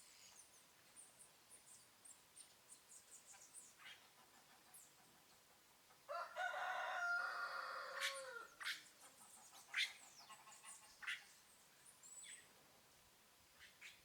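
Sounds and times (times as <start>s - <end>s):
small birds chirping: 0.0s - 5.5s, 8.1s - 12.6s, 13.5s - 14.0s
rooster crowing: 6.1s - 8.5s.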